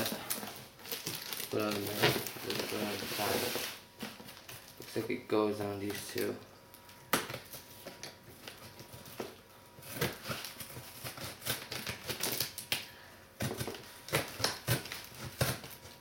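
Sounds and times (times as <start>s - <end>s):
cardboard package rustling: 0.0s - 5.1s, 6.8s - 12.8s.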